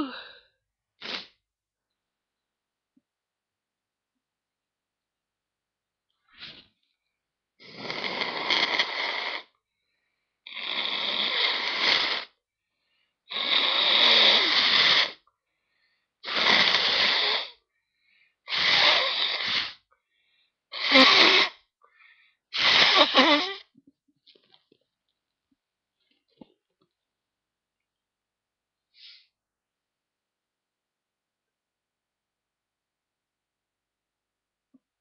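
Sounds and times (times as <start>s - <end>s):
person blowing nose hard: 1.0s - 1.4s, 7.6s - 9.5s, 10.5s - 12.4s, 13.3s - 15.2s, 16.2s - 17.6s, 18.5s - 19.8s, 20.7s - 21.6s, 22.5s - 23.7s.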